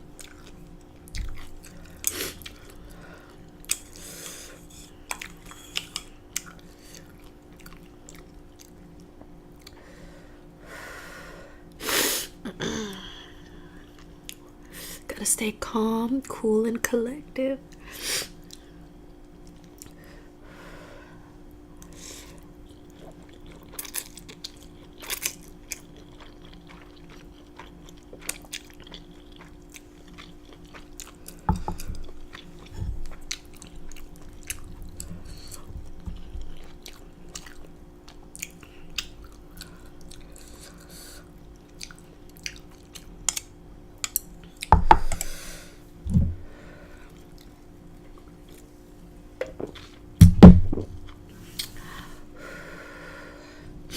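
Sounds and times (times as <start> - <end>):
chewing food: 0.0 - 9.8, 18.4 - 20.0, 21.8 - 44.7, 47.1 - 48.7
faint steady hum: 0.0 - 53.9
low thumps: 50.2 - 51.0.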